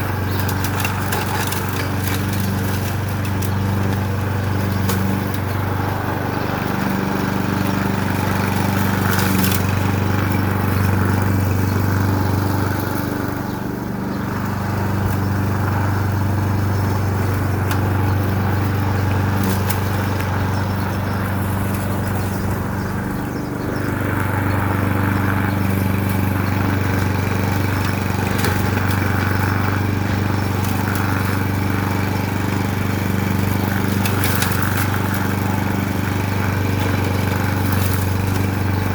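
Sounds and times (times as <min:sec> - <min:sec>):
mower engine cutting brambles: 0:00.0 - 0:38.9.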